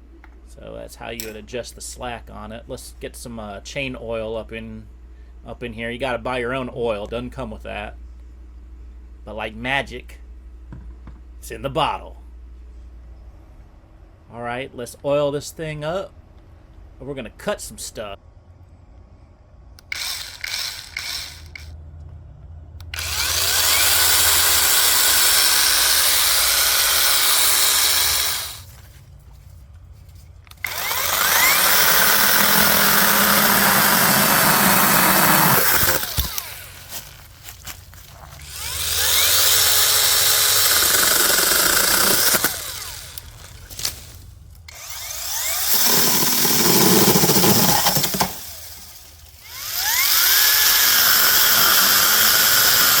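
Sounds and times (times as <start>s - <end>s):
mini chainsaw cutting wood: 19.8s - 21.8s, 22.9s - 28.7s, 30.5s - 37.0s, 38.3s - 44.0s, 44.7s - 53.0s.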